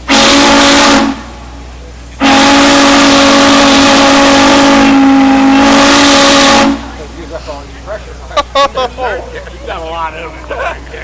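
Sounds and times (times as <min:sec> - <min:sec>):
steam whistle blasts: 0:00.0 - 0:07.0.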